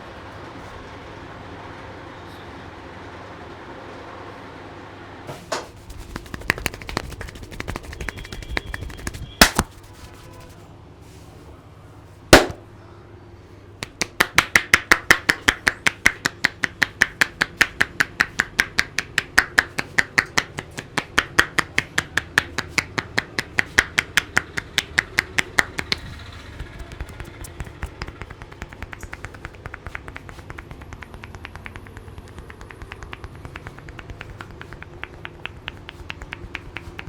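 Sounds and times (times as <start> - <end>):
hand strikes on a head: 6.2 - 9.8, 12.4 - 12.6
loud sharp smack: 6.4 - 10.0, 12.4 - 12.7.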